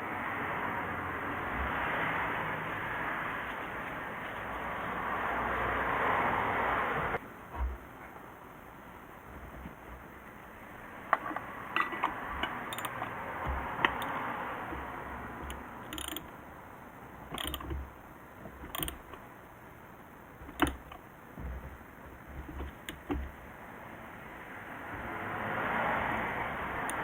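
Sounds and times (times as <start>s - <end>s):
metallic clicks and knocks: 11.1s - 16.4s, 17.3s - 19.3s, 20.4s - 23.4s.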